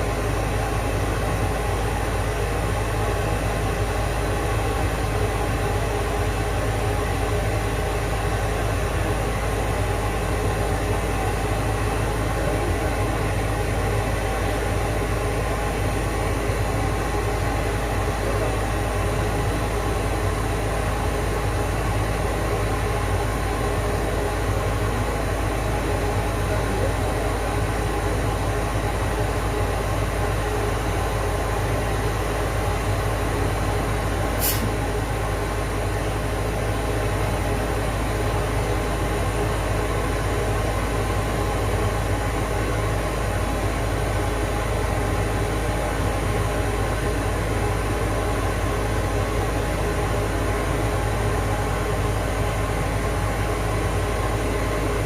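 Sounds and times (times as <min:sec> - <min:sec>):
brief high whistle: 0:34.4 - 0:34.7.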